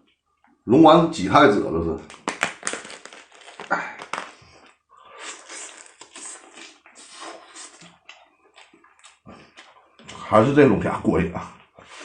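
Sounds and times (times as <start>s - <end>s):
person chewing and smacking: 2.1s - 10.3s.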